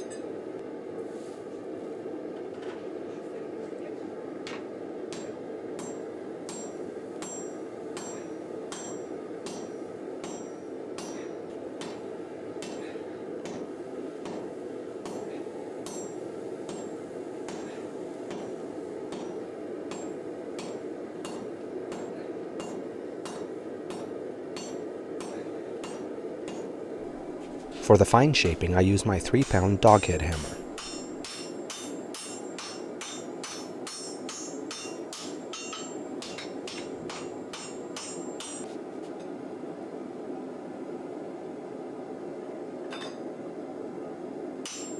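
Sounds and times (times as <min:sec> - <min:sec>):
sledgehammer ringing on steel: 0:30.6 - 0:32.8.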